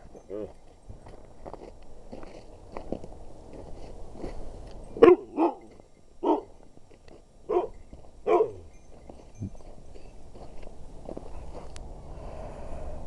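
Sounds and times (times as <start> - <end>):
dog barking: 5.0 - 5.6, 6.2 - 6.5, 7.5 - 7.7, 8.3 - 8.6.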